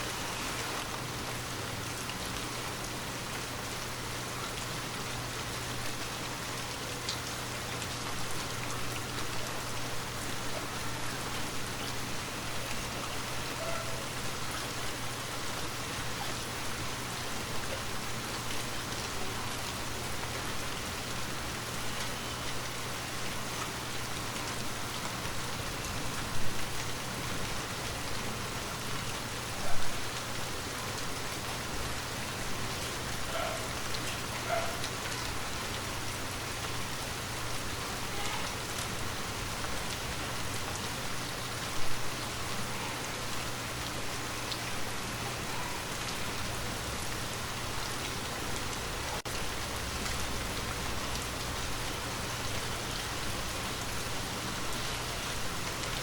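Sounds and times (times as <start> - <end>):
steady rain patter: 0.0 - 56.0.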